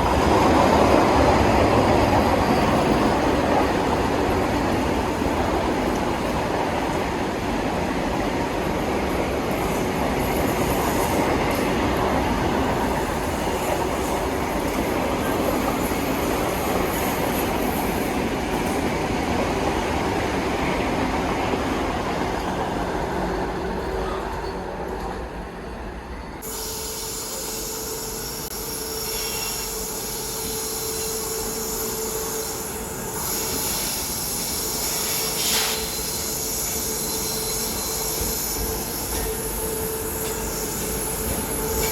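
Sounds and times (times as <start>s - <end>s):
train wheels rumbling on track: 0.0s - 41.9s
train whining tone: 26.1s - 41.9s.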